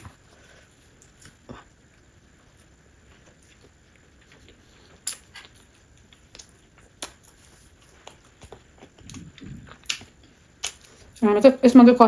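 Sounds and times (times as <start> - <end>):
quiet chewing: 0.0 - 11.2
wet mouth clicks: 9.0 - 10.8.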